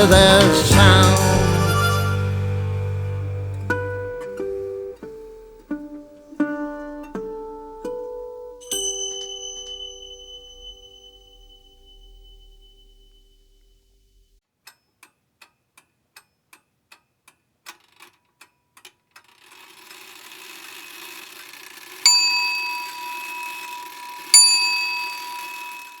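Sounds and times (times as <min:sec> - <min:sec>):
clock bell striking: 0:08.6 - 0:12.6, 0:22.1 - 0:26.0.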